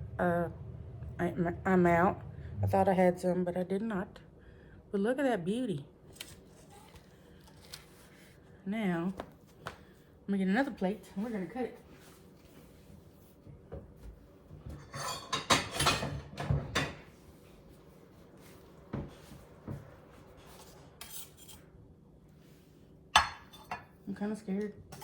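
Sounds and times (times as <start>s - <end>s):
dishes scraping and knocking: 14.5s - 17.1s, 23.2s - 24.0s.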